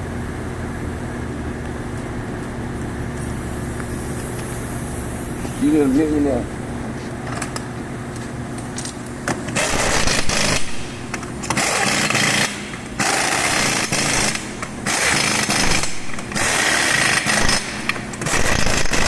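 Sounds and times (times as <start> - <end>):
pneumatic impact wrench hammering: 9.2 - 19.0.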